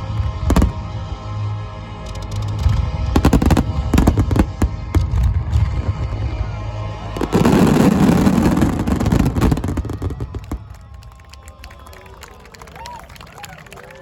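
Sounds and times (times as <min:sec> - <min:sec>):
background music: 0:00.0 - 0:14.0
fireworks crackling: 0:00.5 - 0:00.8, 0:02.1 - 0:06.4, 0:07.1 - 0:13.5
fireworks bursting: 0:00.5 - 0:00.9, 0:02.2 - 0:06.4, 0:07.0 - 0:11.7.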